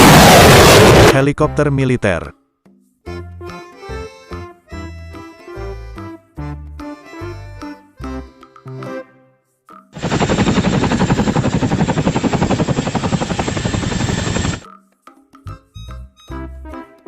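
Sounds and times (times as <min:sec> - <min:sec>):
jingly toy music: 0:14.6 - 0:16.6.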